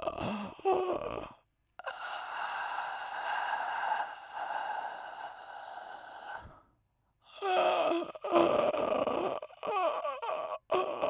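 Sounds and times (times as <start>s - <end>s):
person breathy exhale: 1.8s - 6.6s.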